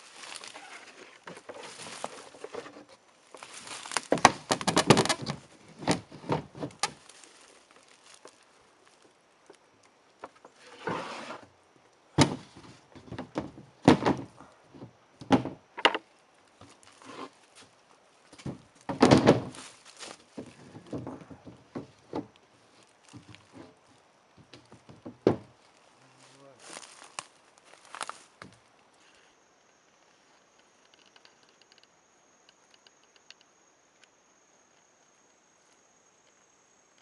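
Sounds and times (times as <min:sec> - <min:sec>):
scraping or rustling: 0:00.0 - 0:08.4, 0:10.5 - 0:11.5, 0:16.6 - 0:17.6
knocks and thunks: 0:04.0 - 0:07.0, 0:12.2 - 0:16.0, 0:18.4 - 0:19.6, 0:20.3 - 0:22.3, 0:24.4 - 0:25.5.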